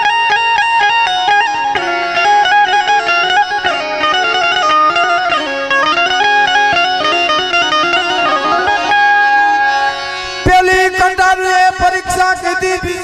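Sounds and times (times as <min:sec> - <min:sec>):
reedy stepping melody: 0:00.0 - 0:13.0.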